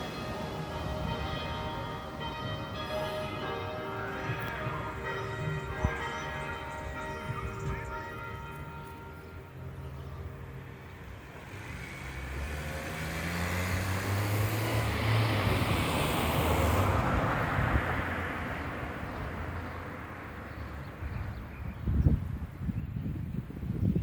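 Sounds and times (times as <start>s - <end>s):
car driving past: 10.5s - 20.8s.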